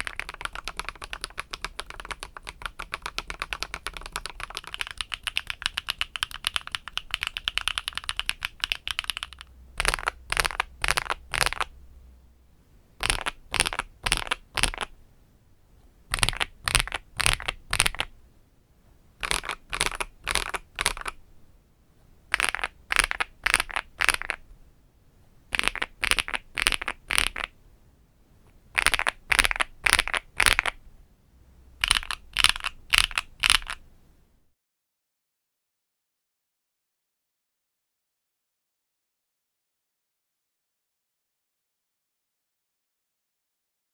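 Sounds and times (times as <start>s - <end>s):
mechanical keyboard typing: 0.0s - 11.7s, 13.0s - 14.9s, 16.1s - 18.1s, 19.2s - 21.2s, 22.3s - 24.4s, 25.5s - 27.5s, 28.8s - 30.8s, 31.8s - 33.8s.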